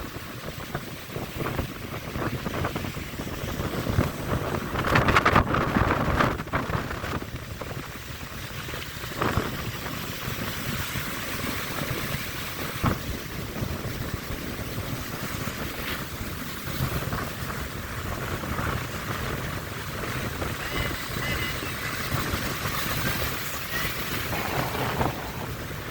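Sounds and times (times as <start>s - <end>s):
surf washing: 0.0s - 25.9s
wind gusting on microphone: 0.0s - 25.9s.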